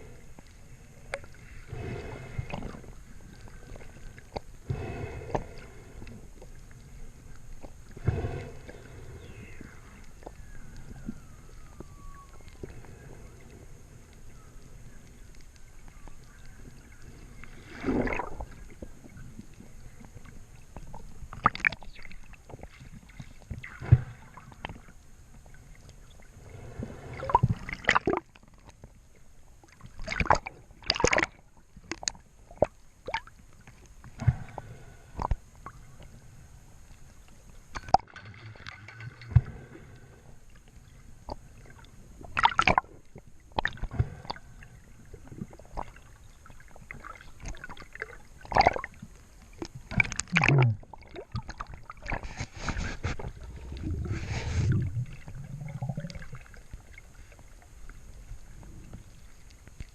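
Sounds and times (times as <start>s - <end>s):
water sloshing and gurgling: 0.0s - 59.9s
water splashing: 17.4s - 19.2s, 26.5s - 28.7s, 30.0s - 33.3s, 41.6s - 42.9s, 45.2s - 49.0s, 49.6s - 57.6s.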